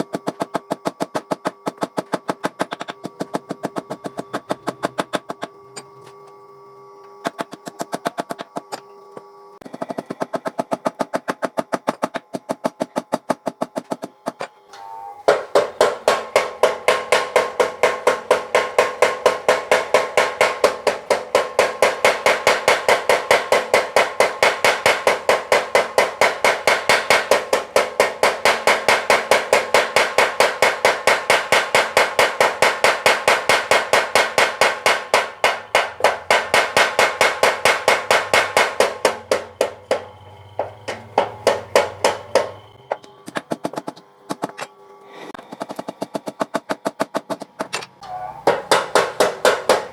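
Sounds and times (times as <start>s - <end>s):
power hammer blows on steel: 13.7s - 43.6s, 48.0s - 49.9s.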